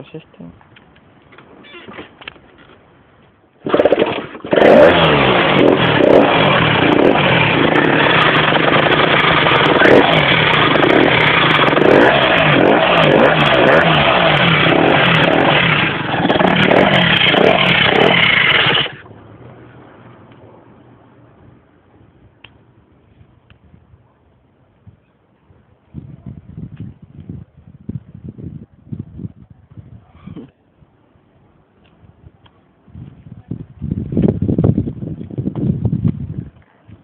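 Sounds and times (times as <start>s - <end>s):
motorcycle engine revving: 3.6s - 19.1s.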